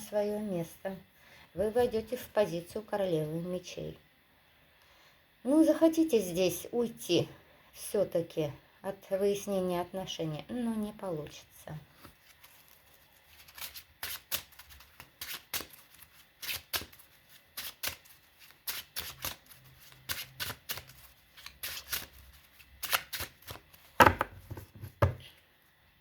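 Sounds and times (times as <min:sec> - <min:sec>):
cards being shuffled: 0:12.0 - 0:25.1.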